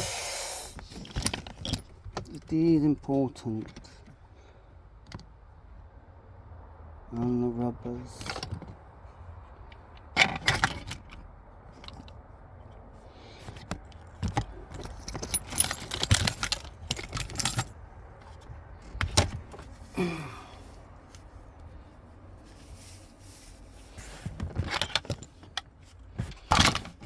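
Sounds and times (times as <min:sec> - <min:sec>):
small metal objects clinking: 0:14.7 - 0:17.7.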